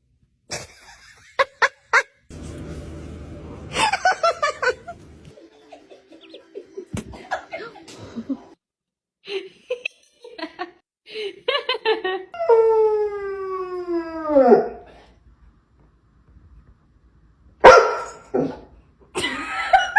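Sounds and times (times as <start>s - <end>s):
people laughing: 2.3s - 8.6s, 19.2s - 19.9s.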